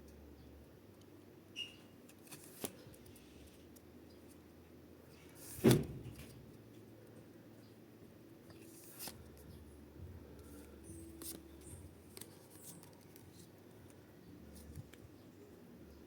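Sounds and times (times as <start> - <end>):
low steady hum: 0.0 - 16.0
cards rustling and clicking: 2.0 - 3.8, 8.5 - 9.6, 10.4 - 15.0.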